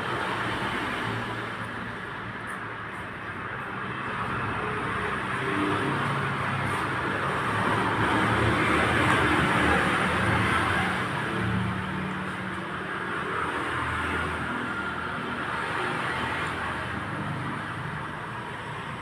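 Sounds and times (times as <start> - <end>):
road traffic with engine hum: 0.0 - 19.0.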